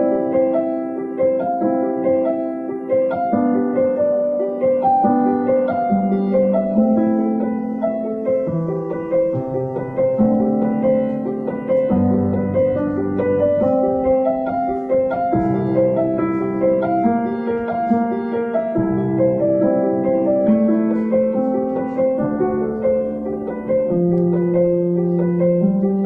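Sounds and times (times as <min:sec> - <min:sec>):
gentle piano music: 0:00.0 - 0:26.0.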